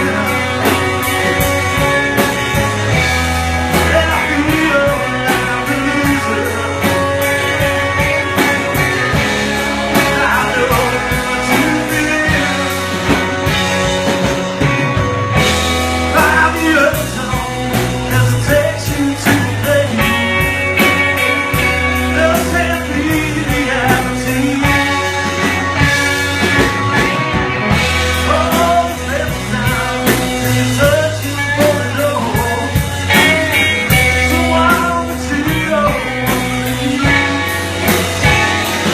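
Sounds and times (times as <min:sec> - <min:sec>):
indie rock band playing: 0:00.0 - 0:38.9
person singing: 0:03.6 - 0:13.5, 0:16.0 - 0:25.8, 0:27.9 - 0:38.4.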